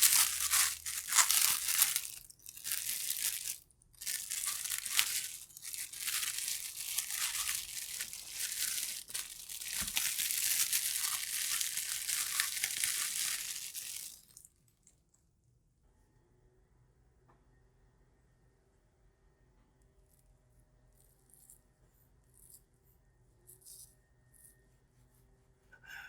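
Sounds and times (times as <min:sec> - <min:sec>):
paper crinkling and tearing: 0:00.0 - 0:14.4.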